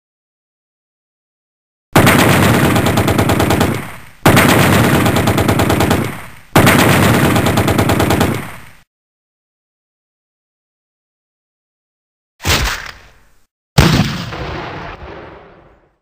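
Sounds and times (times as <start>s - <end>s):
machine-gun bursts: 2.0s - 8.8s.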